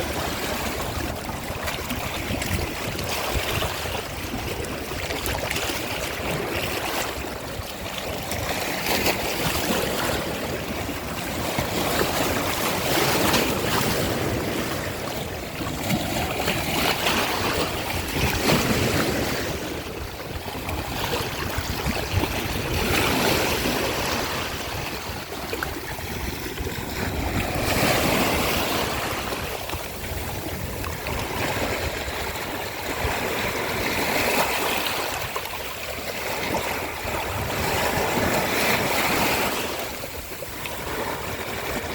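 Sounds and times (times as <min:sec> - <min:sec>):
ocean surf washing on shore: 0:00.0 - 0:41.9.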